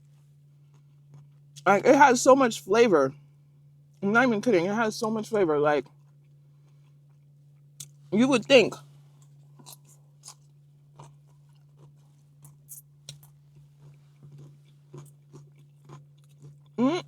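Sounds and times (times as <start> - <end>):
person chewing with crunches: 0.0 - 1.7, 5.8 - 8.0, 9.0 - 17.0.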